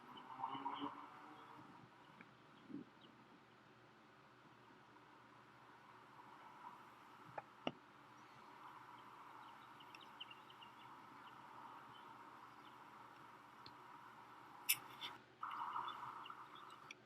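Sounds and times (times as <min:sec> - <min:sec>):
faint background hiss: 0:00.0 - 0:17.0
faint chirps: 0:00.0 - 0:17.0
sharp clicks: 0:14.7 - 0:15.6.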